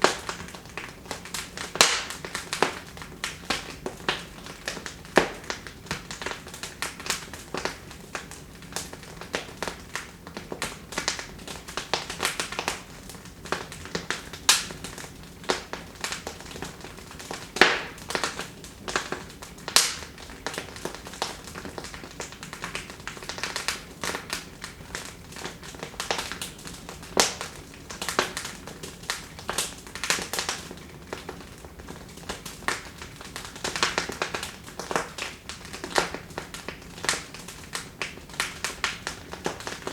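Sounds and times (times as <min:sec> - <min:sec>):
wood fire crackling and popping: 0:00.0 - 0:39.9.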